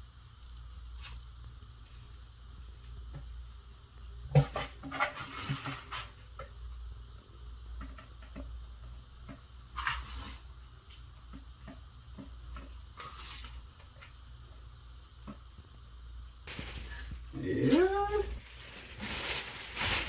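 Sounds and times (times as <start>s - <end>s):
steady low hum: 10.4s - 20.0s
rustling and clatter: 16.5s - 17.3s, 18.2s - 20.0s.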